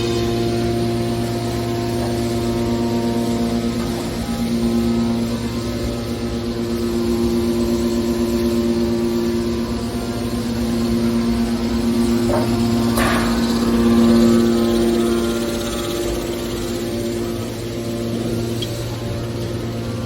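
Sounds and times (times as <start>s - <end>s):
hydraulic power unit humming: 0.0s - 20.0s.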